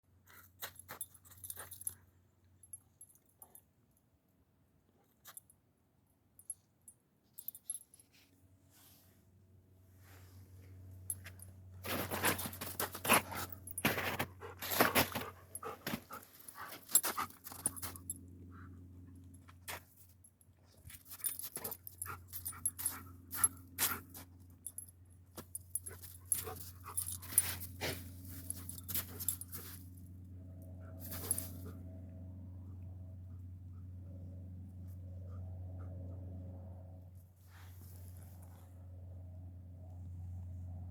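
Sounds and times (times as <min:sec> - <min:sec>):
steady low hum: 0:06.0 - 0:40.9
dog panting: 0:14.2 - 0:17.7.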